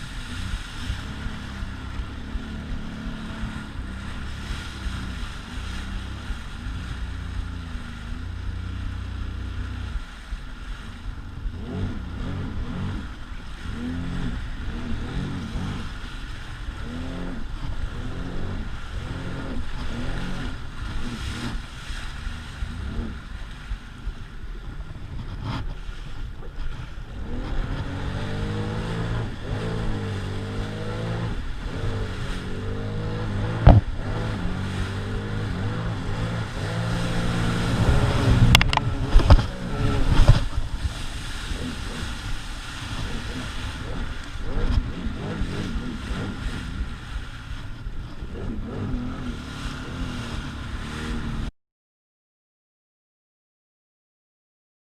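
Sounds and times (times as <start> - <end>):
personal watercraft engine revving: 0.0 - 51.5
sharp knocks: 33.6 - 33.9.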